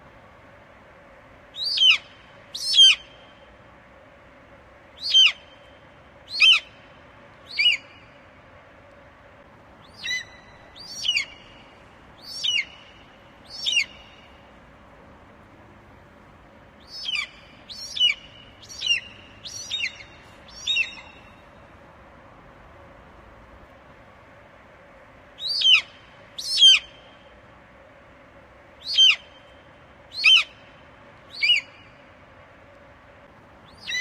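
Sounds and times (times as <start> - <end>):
eagle calling: 1.6 - 3.2, 5.0 - 5.6, 6.3 - 6.8, 7.5 - 8.1, 9.8 - 14.3, 16.8 - 21.4, 25.4 - 27.1, 28.8 - 29.4, 30.1 - 30.7, 31.3 - 31.9, 33.7 - 34.0.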